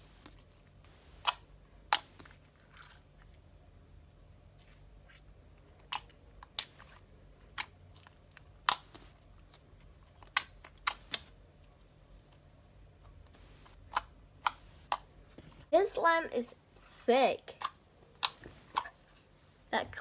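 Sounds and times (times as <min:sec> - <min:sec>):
sharp clicks and pops: 0:08.4 - 0:11.4, 0:17.5 - 0:19.0.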